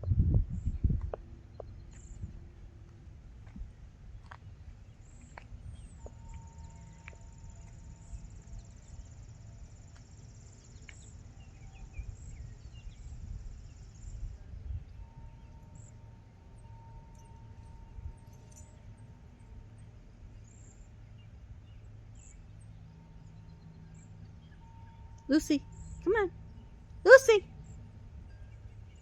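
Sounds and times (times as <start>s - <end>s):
wind rumbling on microphone: 0.0s - 15.8s.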